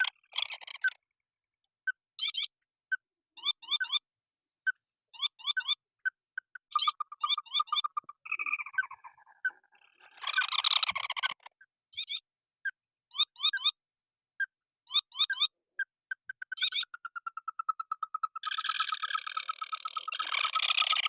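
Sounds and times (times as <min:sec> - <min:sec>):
waterhen calling: 0:06.7 - 0:11.4, 0:16.6 - 0:21.0.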